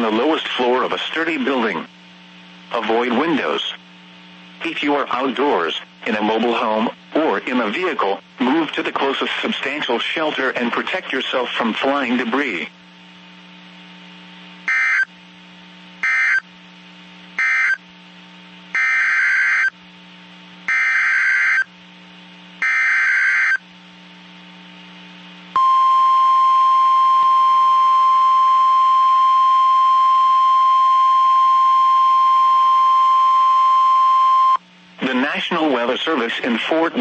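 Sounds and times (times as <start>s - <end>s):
screeching digital data tones: 14.7s - 15.1s, 16.0s - 16.4s, 17.4s - 17.8s, 18.8s - 19.7s, 20.7s - 21.7s, 22.6s - 23.6s
steady warning alarm tone: 14.7s - 15.1s, 16.0s - 16.5s, 17.4s - 17.8s, 18.8s - 19.8s, 20.7s - 21.7s, 22.6s - 23.6s, 25.6s - 34.6s.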